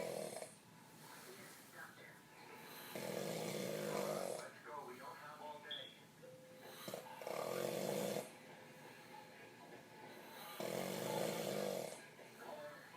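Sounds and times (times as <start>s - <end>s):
loud buzzing snores: 0.0s - 0.6s, 2.7s - 4.6s, 6.7s - 8.4s, 10.2s - 12.1s.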